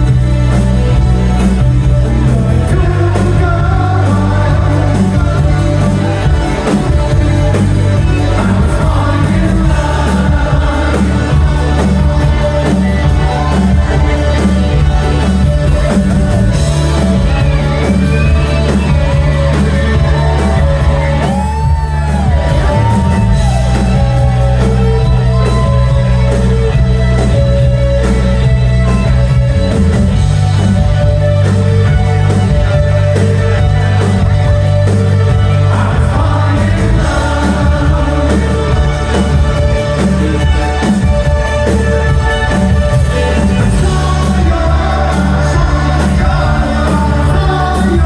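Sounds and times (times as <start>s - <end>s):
singer's voice: 0.0s - 28.2s, 32.0s - 48.0s
pulsing bass line: 0.0s - 48.0s
rock band playing: 0.0s - 48.0s
crowd shouting: 4.7s - 26.9s, 34.1s - 42.1s, 43.0s - 48.0s.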